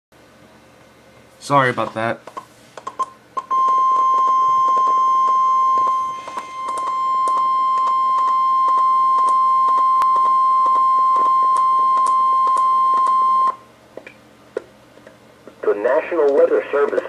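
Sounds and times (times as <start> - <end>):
steady high alarm tone: 3.5 - 13.6
static clicks: 15.0 - 17.0.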